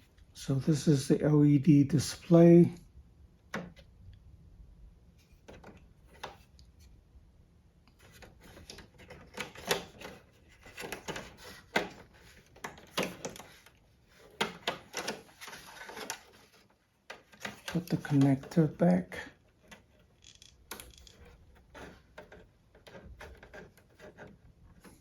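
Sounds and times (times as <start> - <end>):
plastic clicks and knocks: 3.4 - 3.9, 5.4 - 6.8, 7.9 - 25.0.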